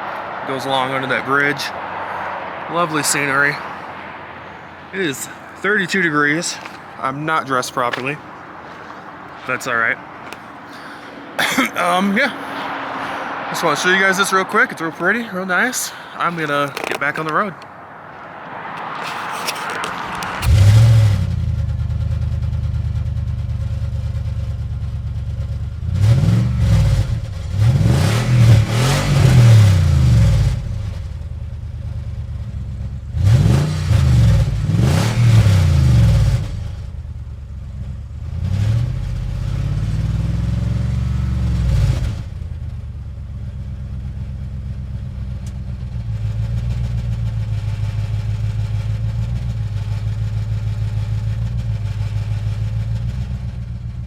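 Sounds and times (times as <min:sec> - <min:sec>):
car engine accelerating: 0:12.2 - 0:15.6, 0:16.2 - 0:54.0.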